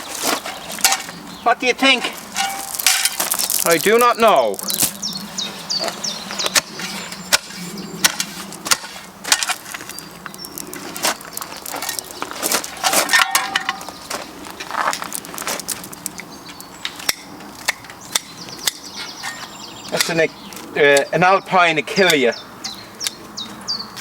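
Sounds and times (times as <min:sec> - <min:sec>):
tool scraping soil: 0:00.0 - 0:01.2, 0:01.8 - 0:14.0.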